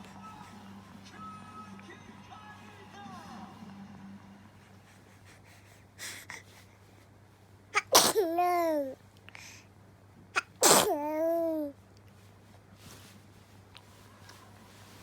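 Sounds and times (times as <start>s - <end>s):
person sneezing: 7.8s - 8.5s, 10.4s - 11.1s.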